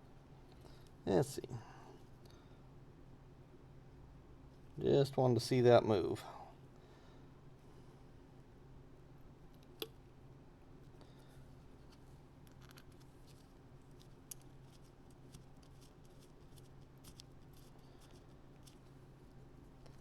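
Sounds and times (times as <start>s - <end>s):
low steady hum: 0.0s - 20.0s
small metal parts clicking: 12.4s - 18.8s.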